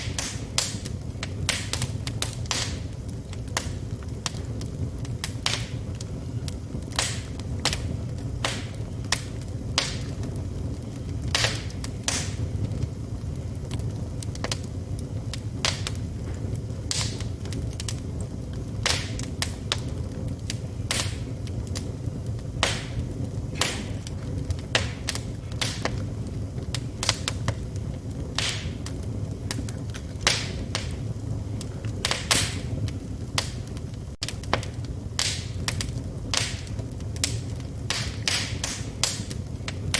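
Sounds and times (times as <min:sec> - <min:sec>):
fire burning: 0:00.0 - 0:39.9
fire crackling and popping: 0:00.0 - 0:39.9.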